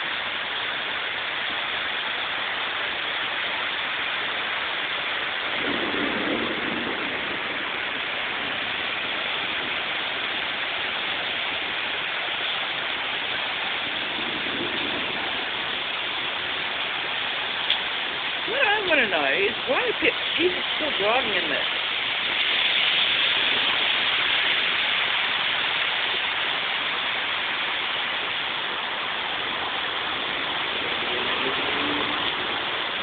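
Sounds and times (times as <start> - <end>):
heavy rain pouring: 0.0 - 33.0
vehicle passing on wet road: 0.0 - 33.0.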